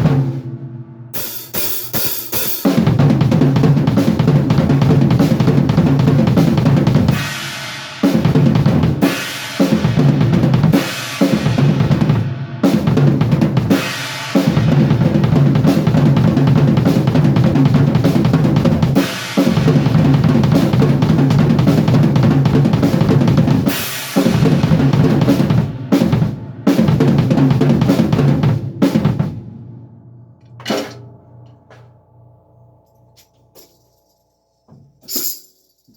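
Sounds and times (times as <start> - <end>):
drum kit played fast: 0.0 - 29.6, 30.6 - 31.2
cymbal crashes: 1.2 - 2.8.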